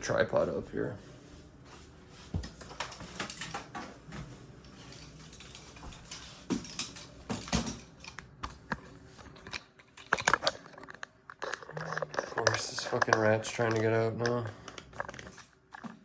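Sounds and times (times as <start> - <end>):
hard objects clicking and tapping: 9.4 - 16.0.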